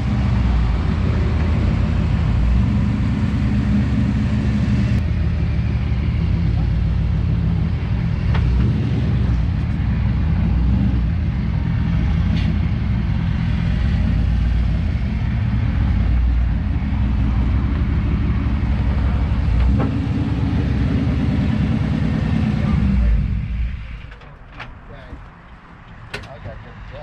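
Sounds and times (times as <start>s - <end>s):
truck engine rumbling: 0.0s - 27.0s.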